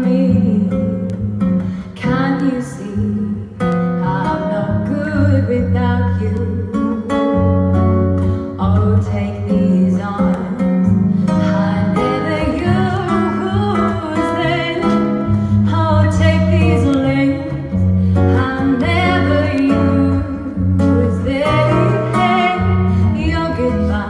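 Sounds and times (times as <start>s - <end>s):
acoustic guitar bossa nova: 0.0s - 24.0s
person singing: 8.6s - 24.0s.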